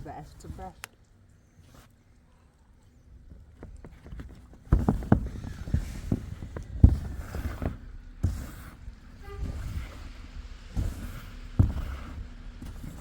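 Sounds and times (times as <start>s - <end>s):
rustling noise: 0.0s - 0.9s, 1.5s - 2.2s, 3.2s - 13.0s
knocks and heavy thumps: 3.3s - 13.0s.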